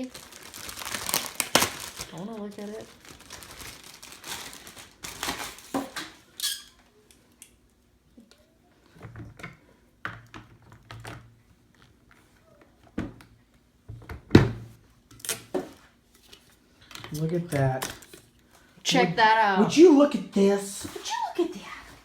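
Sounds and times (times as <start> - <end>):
packaging being handled: 0.0 - 6.2.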